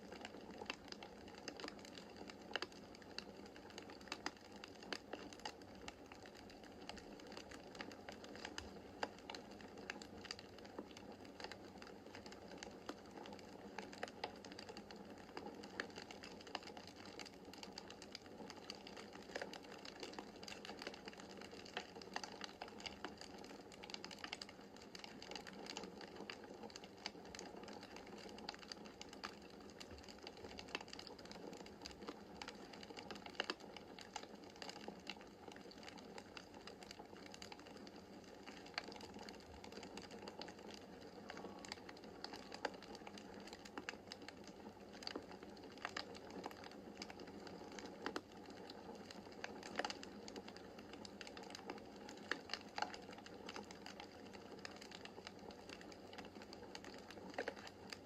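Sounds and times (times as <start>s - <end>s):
wood fire crackling: 0.0s - 58.0s.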